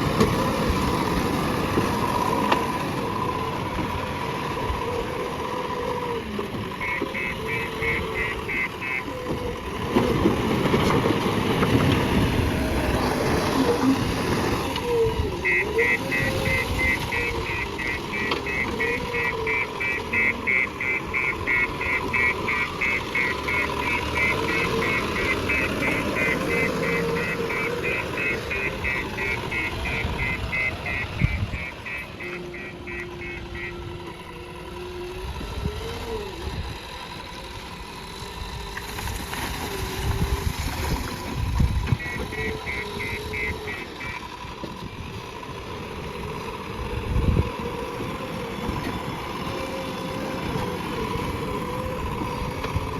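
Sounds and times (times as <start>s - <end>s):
diesel engine under load: 0.0s - 52.9s
fast-pulsing high beep: 15.4s - 33.7s, 42.0s - 44.2s.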